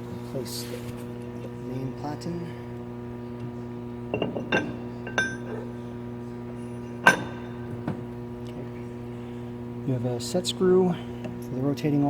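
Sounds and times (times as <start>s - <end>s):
steady electrical hum: 0.0s - 12.0s
metal clinks and knocks: 4.1s - 5.6s.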